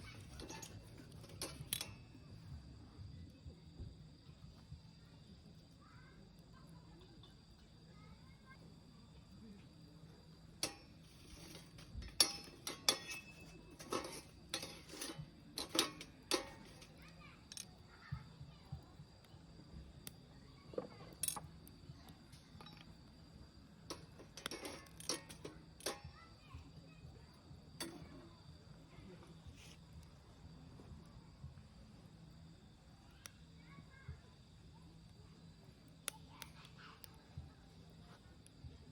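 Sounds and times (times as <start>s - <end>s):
fire popping: 0.0s - 5.8s, 9.0s - 38.9s
wood fire rumbling: 0.0s - 5.8s, 8.7s - 38.9s
ringing clinks and knocks: 10.6s - 17.6s.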